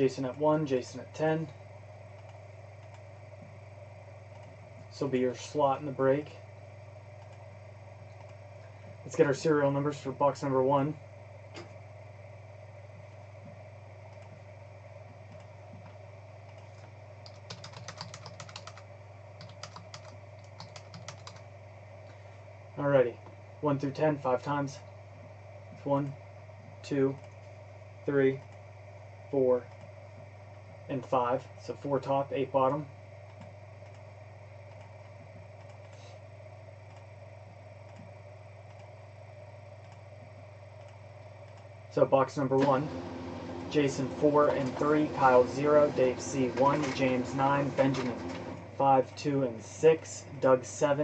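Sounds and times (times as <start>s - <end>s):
low electrical hum: 0.0s - 51.0s
keyboard typing clicks: 15.3s - 18.8s, 19.4s - 21.4s.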